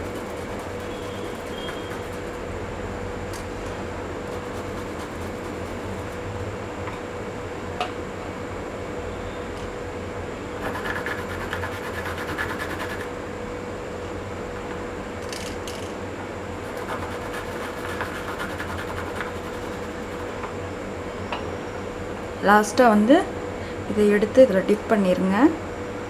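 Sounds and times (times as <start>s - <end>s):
scraping on a grinding stone: 0.0s - 2.4s, 4.3s - 6.5s, 10.6s - 13.1s, 16.6s - 20.5s
steady hum: 0.0s - 7.5s, 10.2s - 13.8s, 16.4s - 24.1s.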